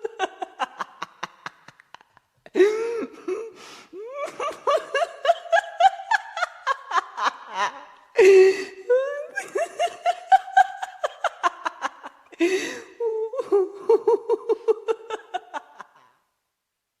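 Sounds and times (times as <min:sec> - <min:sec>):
person laughing: 0:00.0 - 0:16.1
noisy gasp of breath: 0:02.5 - 0:04.0, 0:08.2 - 0:08.9, 0:12.4 - 0:13.0.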